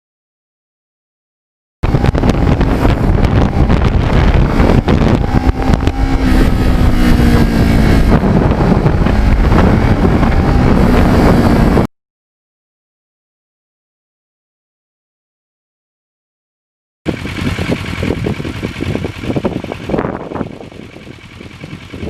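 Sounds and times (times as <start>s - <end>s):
motorcycle engine running: 1.8s - 11.9s, 17.1s - 22.0s
wind buffeting microphone: 1.8s - 11.9s, 17.1s - 22.0s.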